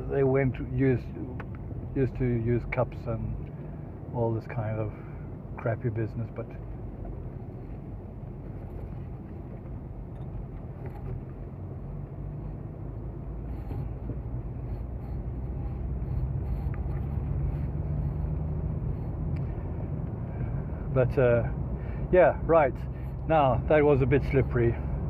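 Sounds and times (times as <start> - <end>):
car engine and tyre rumble: 0.0 - 25.0.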